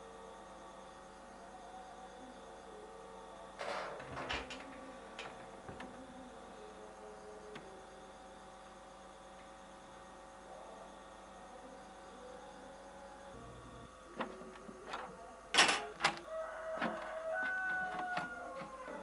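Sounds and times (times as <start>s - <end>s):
oscilloscope fans humming: 0.0s - 19.0s
clicks and rattles: 3.6s - 6.0s, 14.2s - 16.2s.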